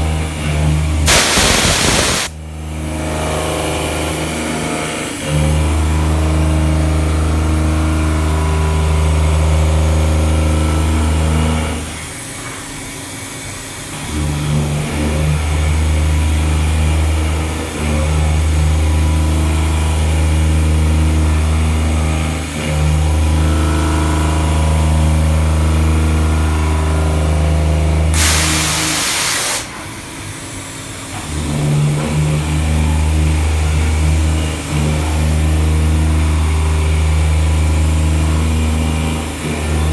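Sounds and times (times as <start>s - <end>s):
milling machine hum: 1.1s - 2.3s
loud air hiss: 1.1s - 2.4s, 28.2s - 30.6s.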